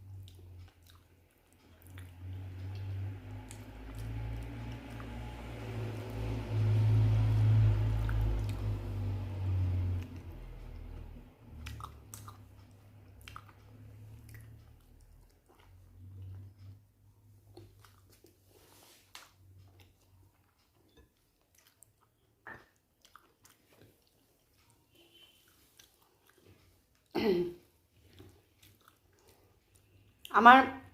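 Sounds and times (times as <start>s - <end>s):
close chewing: 0.0s - 27.2s, 27.8s - 30.3s
wet mouth clicks and smacks: 10.0s - 15.7s.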